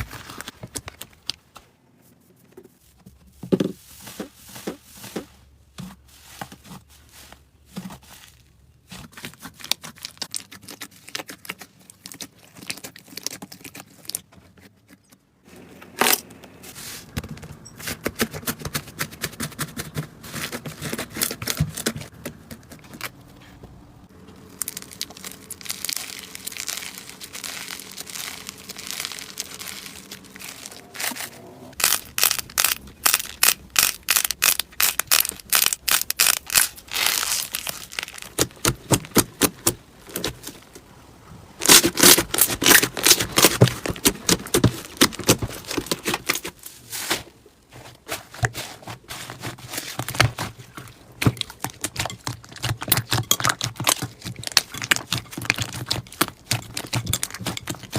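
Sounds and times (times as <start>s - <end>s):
slime crackling and popping: 24.4s - 31.2s, 31.8s - 40.4s, 41.6s - 46.4s, 49.9s - 57.9s.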